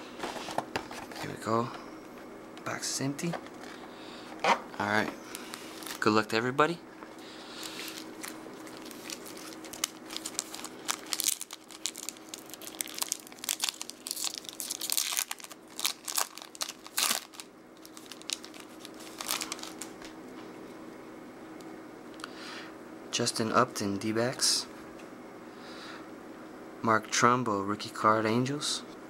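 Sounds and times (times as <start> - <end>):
foil wrapper tearing and crinkling: 5.4 - 6.1, 7.6 - 20.0.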